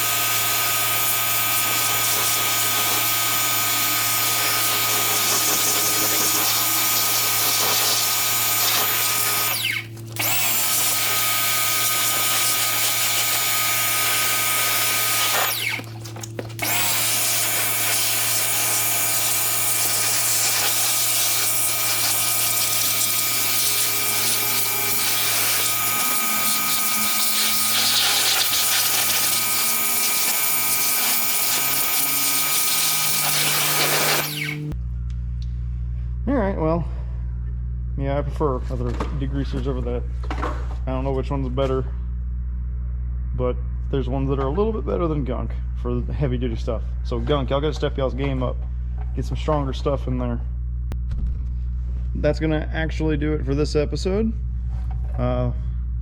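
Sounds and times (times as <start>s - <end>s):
pressure washer spraying: 0.0s - 34.8s.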